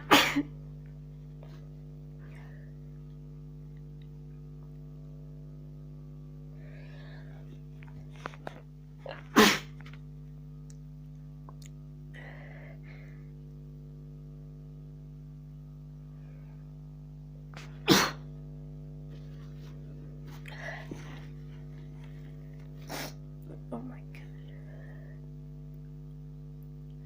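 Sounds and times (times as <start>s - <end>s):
woman sneezing: 0.0s - 0.5s, 9.1s - 9.9s, 17.6s - 18.3s, 22.8s - 23.2s
steady low hum: 0.0s - 27.0s.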